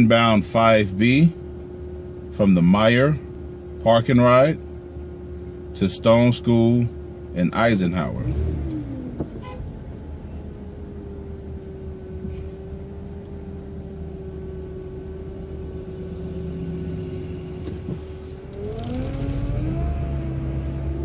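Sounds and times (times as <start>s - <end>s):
bus engine idling: 0.0s - 21.0s
steady whine: 0.0s - 21.0s.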